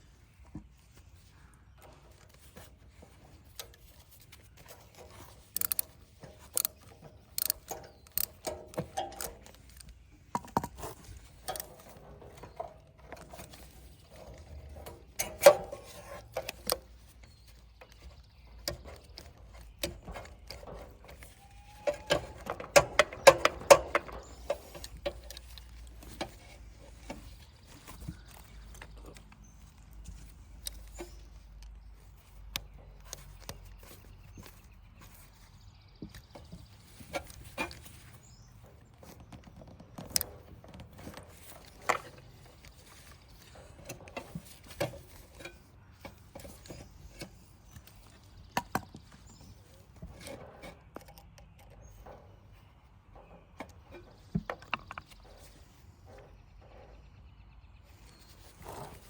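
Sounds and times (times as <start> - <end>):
hand tools clinking on metal: 3.5 - 17.0, 18.0 - 31.7.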